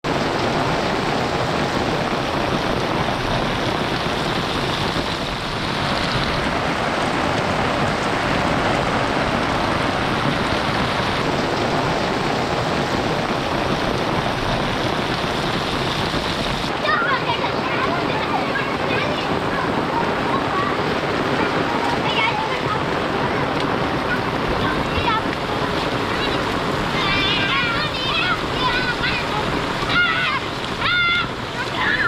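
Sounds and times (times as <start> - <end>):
heavy rain falling: 0.0 - 32.0.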